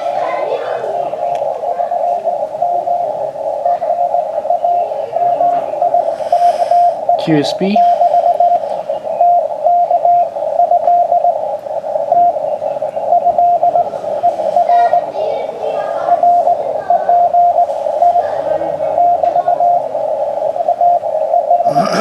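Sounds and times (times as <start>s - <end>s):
radio band hiss: 1.1s - 14.7s, 17.4s - 22.0s
morse code tone: 1.9s - 8.6s, 9.2s - 11.4s, 13.1s - 14.6s.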